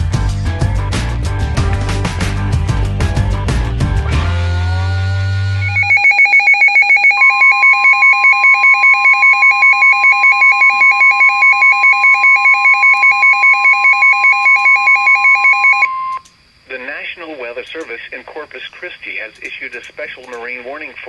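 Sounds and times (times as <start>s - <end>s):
two-pitch electronic alarm beeping: 4.6s - 16.3s
steady weather radio warning tone: 5.5s - 21.0s.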